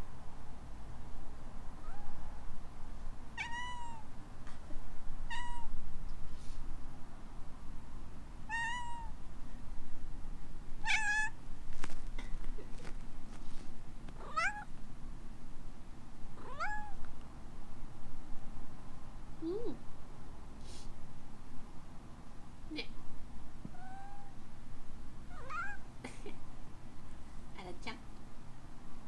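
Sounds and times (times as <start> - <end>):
kitten meowing: 1.8 - 2.2, 3.4 - 4.1, 5.3 - 5.7, 8.5 - 9.2, 10.9 - 11.4, 14.2 - 14.7, 16.4 - 17.0, 23.7 - 24.3, 25.3 - 25.8.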